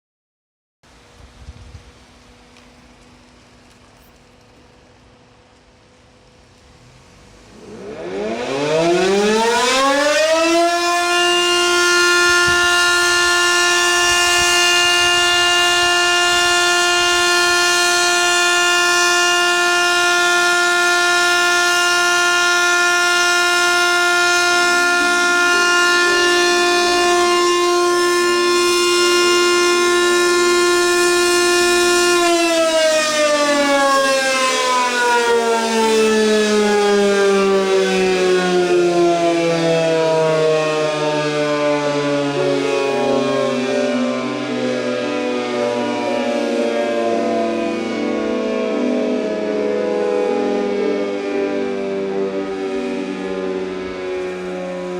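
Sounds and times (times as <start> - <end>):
electric motor siren wailing: 6.8 - 54.9.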